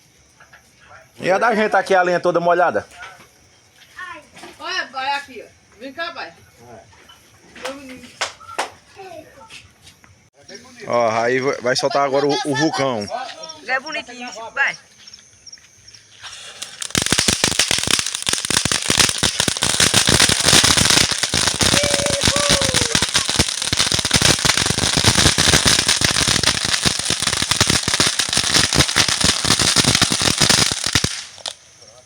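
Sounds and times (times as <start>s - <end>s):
firework fountain crackling: 16.2s - 32.0s.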